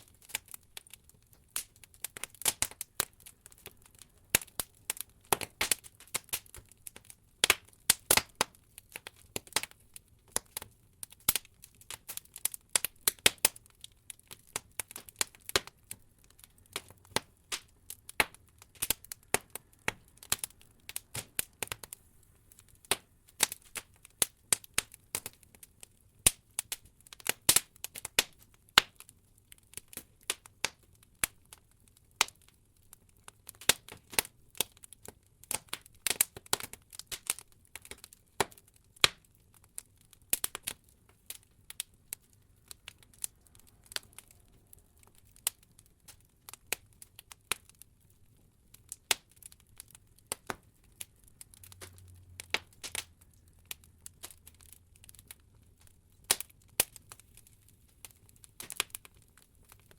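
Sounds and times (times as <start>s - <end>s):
fire crackling and popping: 0.0s - 59.9s
low rumble of flames: 48.1s - 59.9s.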